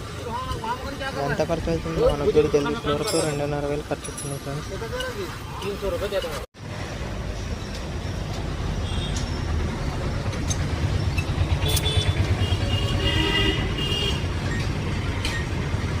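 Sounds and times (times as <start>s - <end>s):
street traffic: 0.0s - 16.0s
vehicle engine rumbling: 0.0s - 16.0s
car horn: 11.6s - 14.3s.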